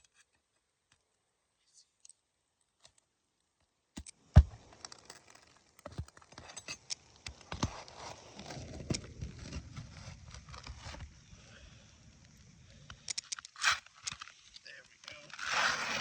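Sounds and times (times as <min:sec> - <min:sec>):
taps and scrapes on shingle roof: 0:05.5 - 0:11.1.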